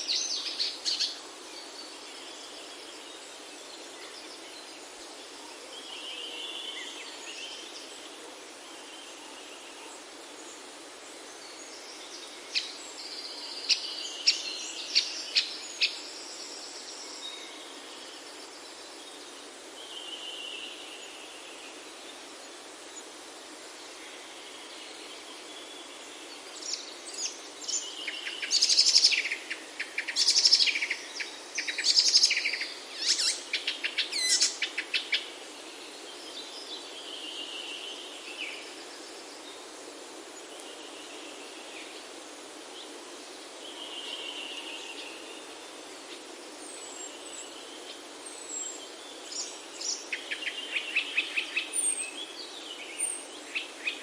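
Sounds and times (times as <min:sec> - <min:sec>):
songbirds singing: 0:00.0 - 0:54.0
steady outdoor background hiss: 0:00.0 - 0:54.0.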